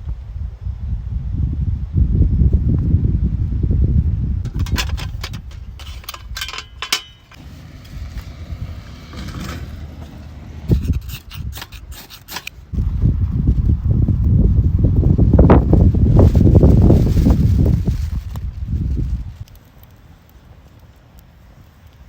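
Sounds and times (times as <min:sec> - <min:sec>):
wind buffeting microphone: 0:00.0 - 0:19.6
metallic clinks and rattles: 0:04.5 - 0:08.0.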